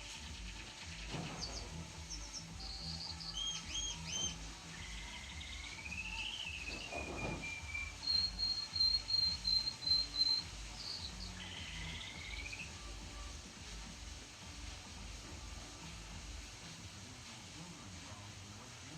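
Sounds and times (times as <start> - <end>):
canary singing trills: 0.0 - 13.2.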